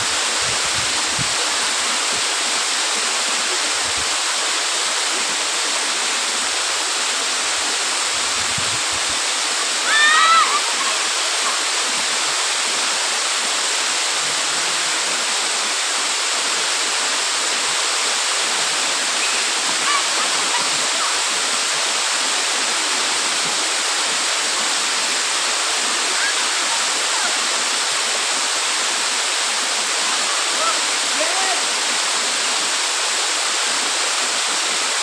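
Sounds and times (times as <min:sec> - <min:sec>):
waterfall pouring: 0:14.7 - 0:28.6.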